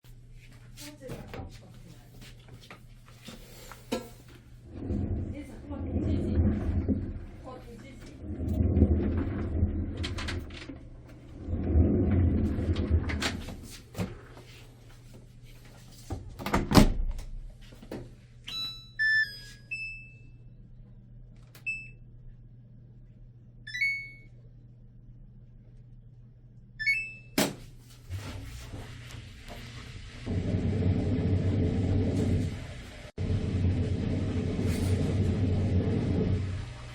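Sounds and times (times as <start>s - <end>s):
washing machine drum rumbling: 4.6s - 14.4s, 28.1s - 36.9s
short electronic beeps: 18.5s - 20.3s, 23.7s - 24.3s.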